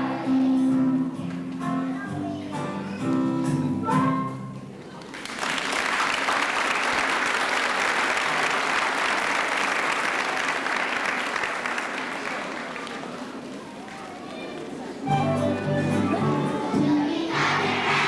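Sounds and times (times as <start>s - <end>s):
audience applauding: 5.0s - 14.8s
song: 15.0s - 18.0s.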